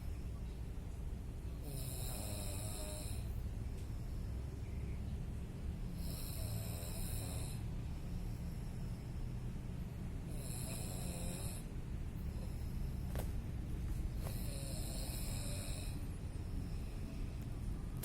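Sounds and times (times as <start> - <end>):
person snoring: 1.6 - 3.3, 6.0 - 7.6, 10.3 - 11.7, 14.2 - 16.1.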